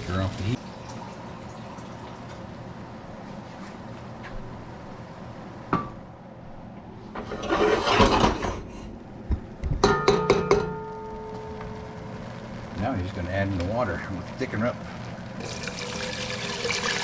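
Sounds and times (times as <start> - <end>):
metal cookware clanking: 9.8 - 11.1.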